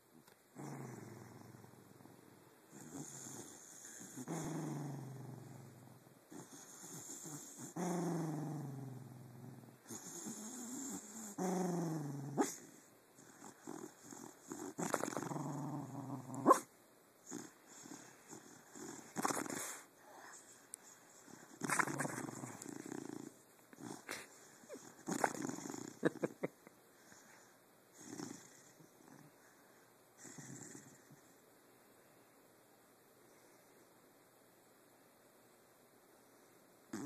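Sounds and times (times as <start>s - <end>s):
sleeping dog growling woofs: 0.5s - 29.6s, 30.2s - 31.4s.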